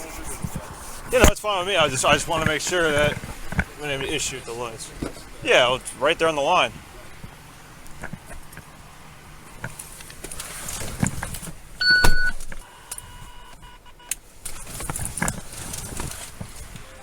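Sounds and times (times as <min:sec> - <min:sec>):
car door shutting: 0:06.7 - 0:17.0
faint steady tone: 0:11.7 - 0:14.6
short electronic beep: 0:11.8 - 0:14.1
clicks and rustling of gear: 0:14.1 - 0:16.9.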